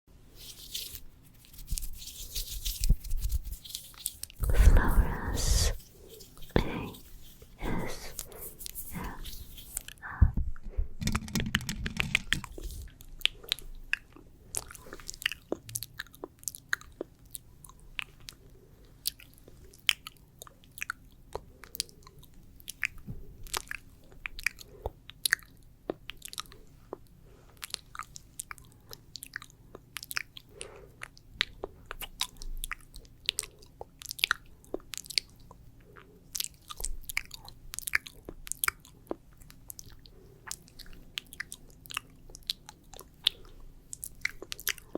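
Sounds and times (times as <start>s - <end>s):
wet mouth sounds: 1.4s - 10.2s.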